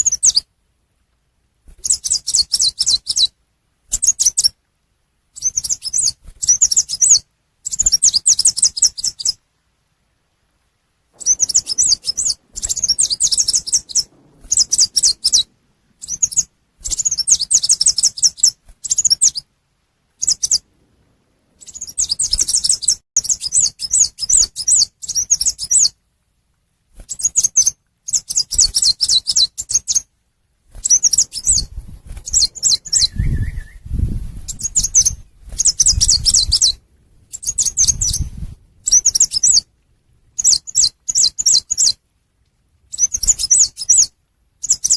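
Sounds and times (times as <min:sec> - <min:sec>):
high twittering bird trills: 0:05.4 - 0:09.4, 0:11.2 - 0:19.5, 0:20.2 - 0:20.7, 0:21.5 - 0:26.0, 0:30.8 - 0:39.7, 0:40.4 - 0:42.0, 0:42.9 - 0:44.9.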